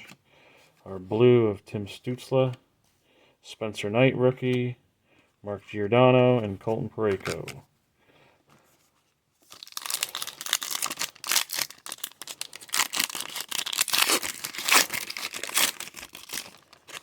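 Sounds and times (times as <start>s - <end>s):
plastic wrapper crinkling and tearing: 9.4s - 17.0s.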